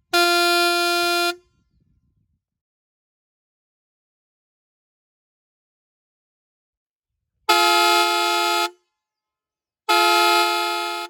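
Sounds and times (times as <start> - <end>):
car horn chord blasts: 0.1 - 1.5, 7.5 - 8.8, 9.9 - 11.0.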